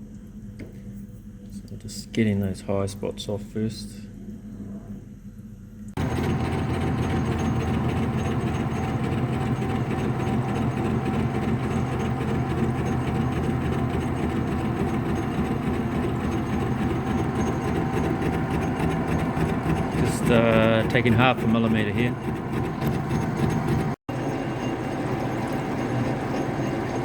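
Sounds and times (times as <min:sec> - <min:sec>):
metal lathe running: 0:06.0 - 0:27.0.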